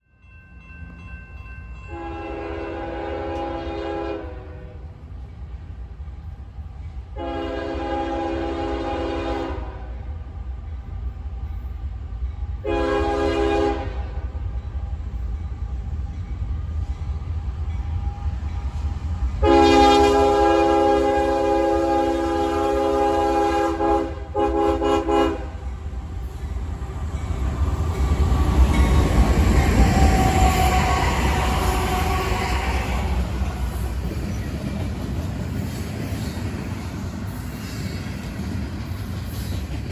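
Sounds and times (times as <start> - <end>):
low train rumble: 0.0 - 39.9
locomotive air horn blasts: 1.9 - 4.8, 7.2 - 10.0, 12.6 - 14.2, 19.4 - 25.6.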